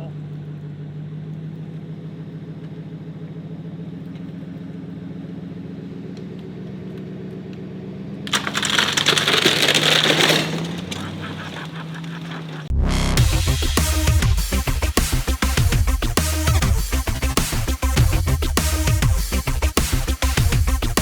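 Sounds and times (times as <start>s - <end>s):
low engine hum: 0.0s - 9.5s
loud rushing crackling noise: 8.3s - 12.6s
electronic music: 12.7s - 21.0s.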